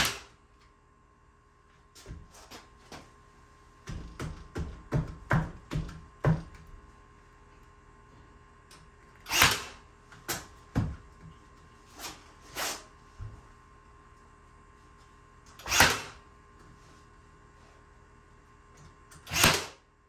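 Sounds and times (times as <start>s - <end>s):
knocks and clunks on wood: 3.8s - 6.7s.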